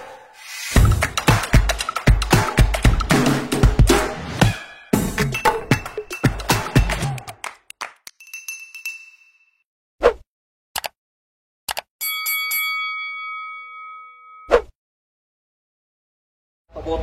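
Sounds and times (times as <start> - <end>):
bell dinging: 5.3 - 6.5, 8.2 - 9.6, 12.0 - 14.5.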